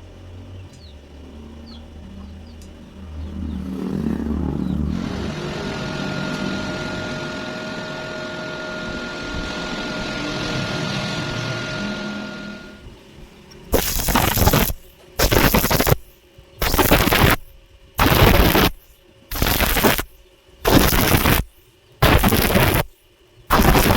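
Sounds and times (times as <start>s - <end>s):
faint steady whine: 0.0s - 23.9s
electric arc welding hiss: 13.7s - 23.9s.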